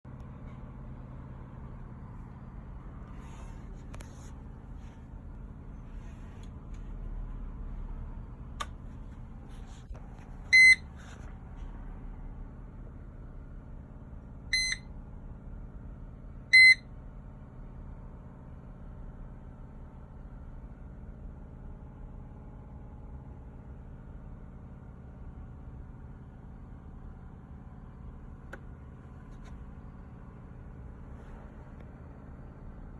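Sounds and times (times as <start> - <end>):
steady low hum: 0.1 - 32.9
warning buzzer short high beeps: 10.6 - 10.8, 14.6 - 14.8, 16.6 - 16.8.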